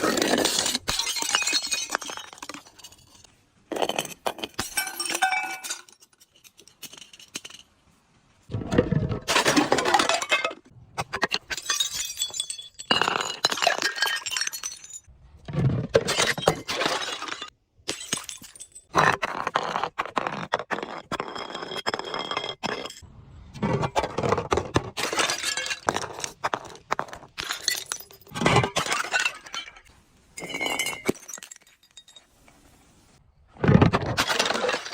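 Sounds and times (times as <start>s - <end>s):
glass bottles breaking and crushed: 0.0s - 7.6s, 9.2s - 15.1s, 15.9s - 18.9s, 24.0s - 32.4s, 33.7s - 34.9s
glass shards clinking: 3.9s - 7.7s.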